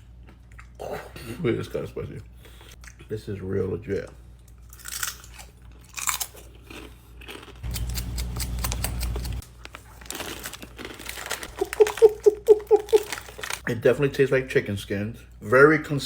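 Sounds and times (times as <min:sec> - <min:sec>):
crunching of crispy chicken skin: 0:04.7 - 0:13.6
person's voice: 0:11.6 - 0:16.0.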